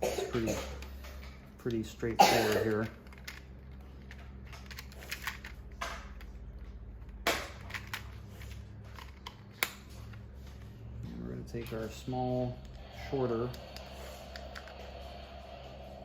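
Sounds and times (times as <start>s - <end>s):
plastic parts clicking and knocking: 0.6s - 10.2s.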